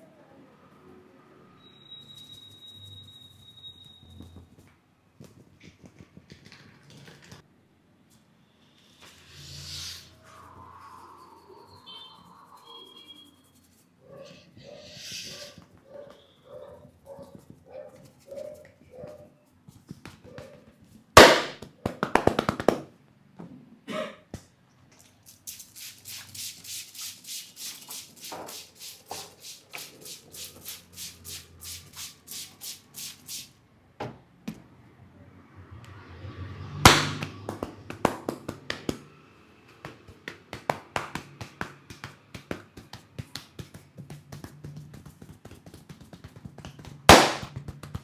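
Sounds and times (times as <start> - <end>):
hands slapping and tapping head: 19.6 - 22.9, 36.9 - 39.1, 39.7 - 48.0.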